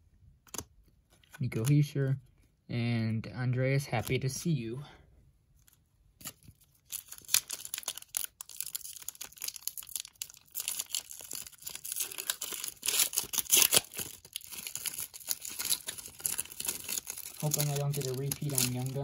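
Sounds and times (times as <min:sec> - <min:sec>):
foil wrapper crinkling and tearing: 0:05.6 - 0:19.0.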